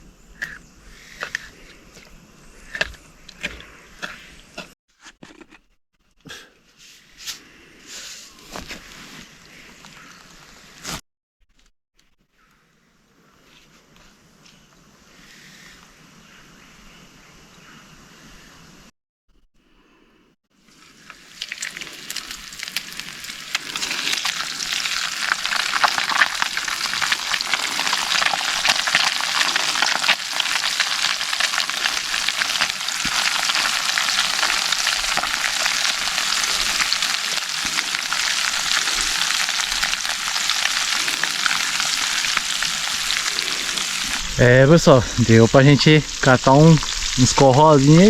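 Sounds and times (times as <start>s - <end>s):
fish frying in hot oil: 20.7s - 48.0s.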